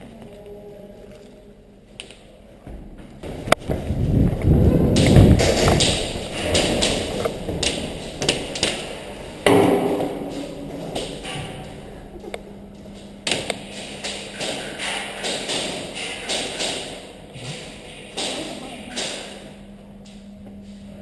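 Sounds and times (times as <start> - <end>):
knocks and thumps: 2.7 - 11.8.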